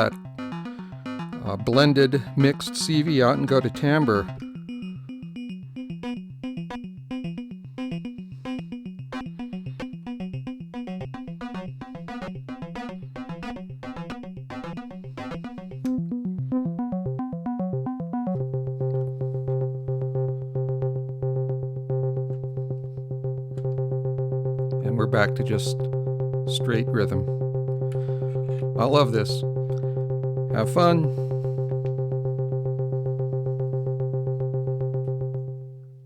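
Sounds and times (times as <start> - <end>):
synthesizer pulsed notes: 0.0 - 36.0.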